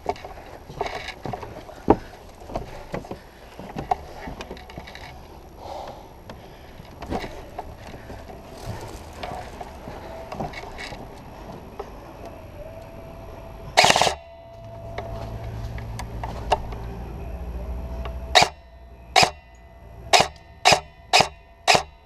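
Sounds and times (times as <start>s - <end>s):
airsoft guns firing: 13.8s - 14.2s.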